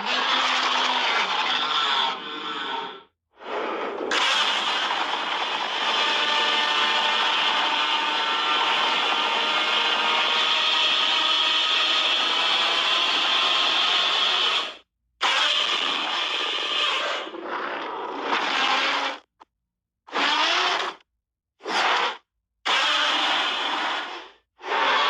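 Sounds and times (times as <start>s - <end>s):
harsh screeching monster roar: 0.0s - 9.4s.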